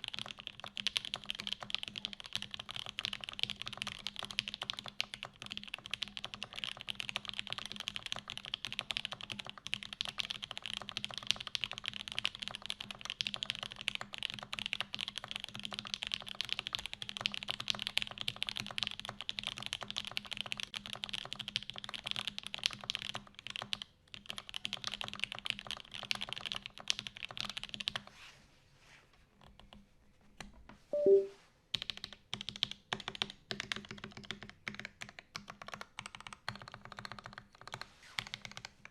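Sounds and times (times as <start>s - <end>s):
mechanical keyboard typing: 0.0s - 28.0s, 31.0s - 38.8s.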